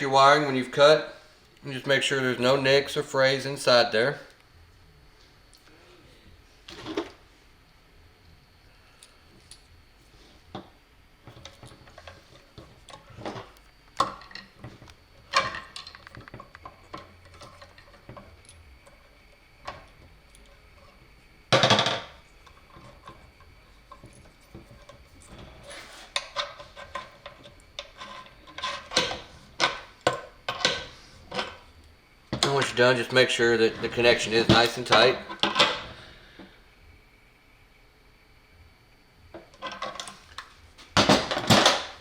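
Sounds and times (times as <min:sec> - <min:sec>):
parts clattering: 0:10.5 - 0:36.0, 0:39.4 - 0:42.0.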